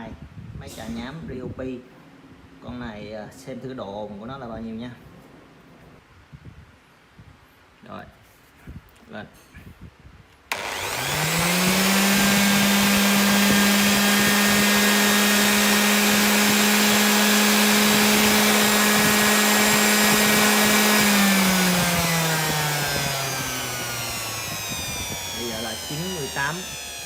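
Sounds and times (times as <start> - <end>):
electric sander motor whining: 10.5 - 27.0.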